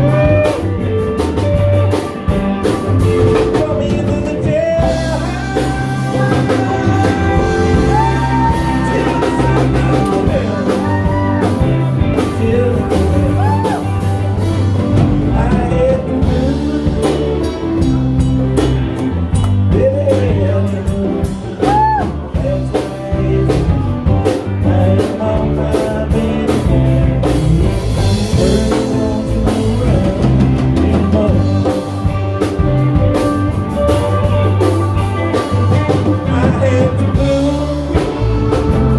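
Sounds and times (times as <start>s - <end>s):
lead guitar bent sliding notes: 0.0s - 24.2s, 26.6s - 38.9s
live rock band playing: 0.0s - 38.9s.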